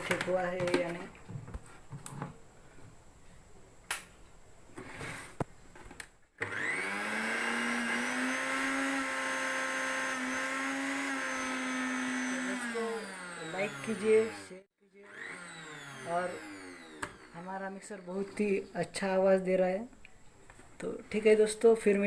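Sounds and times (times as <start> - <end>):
mixer grinder motor whining: 6.4 - 18.4.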